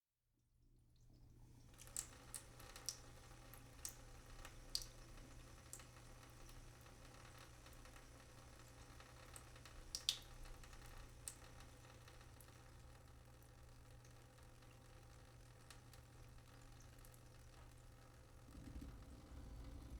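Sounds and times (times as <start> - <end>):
water dripping: 1.0 - 19.9
faint low hum: 15.6 - 19.9.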